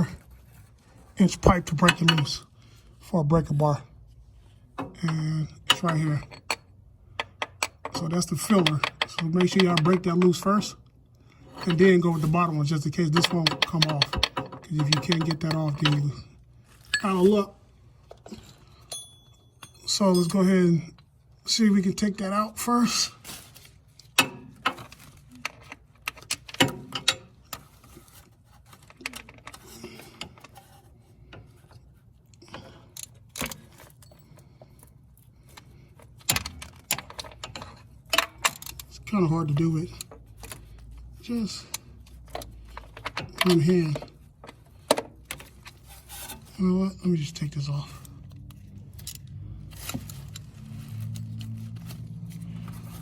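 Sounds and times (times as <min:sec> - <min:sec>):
metallic clinks of tools: 0:18.8 - 0:20.5.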